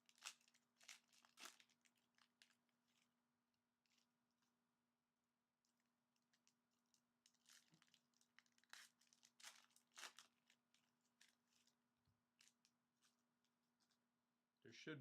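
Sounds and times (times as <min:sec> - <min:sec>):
packaging tearing and crinkling: 0:00.0 - 0:03.1, 0:06.2 - 0:11.8.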